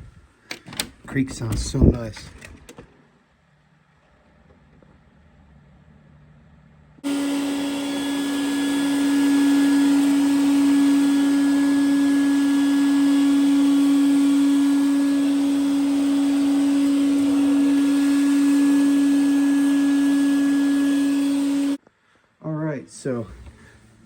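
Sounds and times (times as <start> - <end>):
vacuum cleaner running: 7.0 - 21.8.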